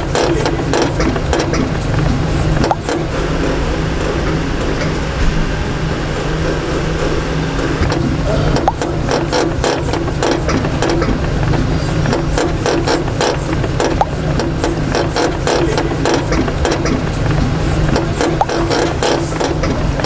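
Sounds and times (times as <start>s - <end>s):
drivetrain humming: 0.0s - 20.0s
mechanical clicking and rattling: 0.0s - 20.0s.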